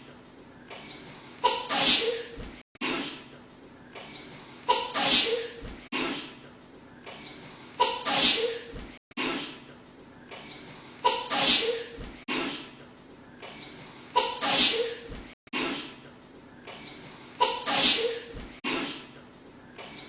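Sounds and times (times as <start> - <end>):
woman sneezing: 1.4 - 3.3, 4.7 - 6.4, 7.8 - 9.6, 11.0 - 12.8, 14.2 - 16.0, 17.4 - 19.1.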